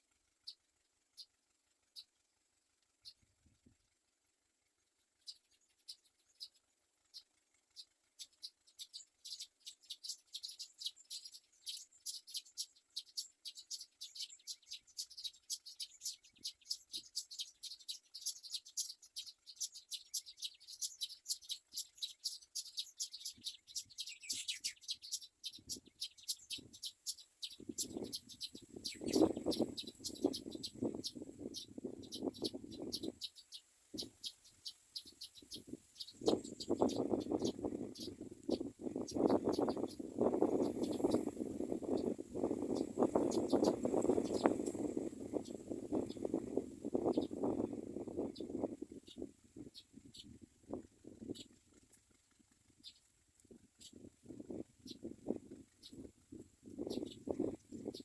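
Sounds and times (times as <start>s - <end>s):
nestlings begging chirps: 7.8s - 50.3s, 56.8s - 58.0s
rhythmic bird chattering: 7.8s - 50.3s, 56.8s - 58.0s.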